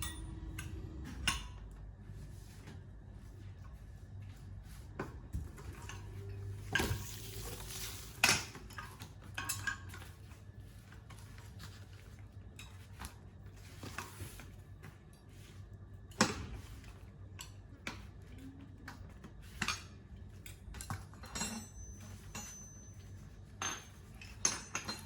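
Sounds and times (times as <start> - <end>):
low steady hum: 0.0 - 25.0
metal clinks and knocks: 20.7 - 25.0.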